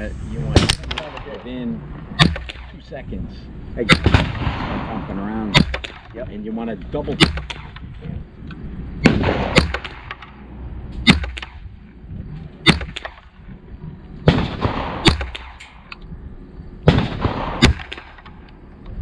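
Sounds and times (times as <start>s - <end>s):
gunshots with echo: 0.5s - 1.6s, 2.2s - 2.8s, 3.9s - 6.3s, 7.1s - 7.9s, 9.0s - 10.3s, 11.0s - 11.7s, 12.6s - 13.3s, 14.2s - 15.8s, 16.8s - 18.4s.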